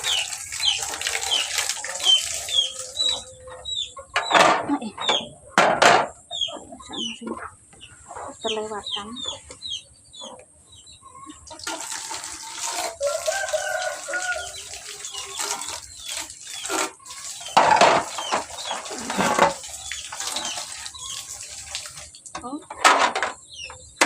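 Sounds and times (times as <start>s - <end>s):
tap water splashing: 0.0s - 3.2s, 11.5s - 23.4s
chickens clucking: 0.0s - 24.0s.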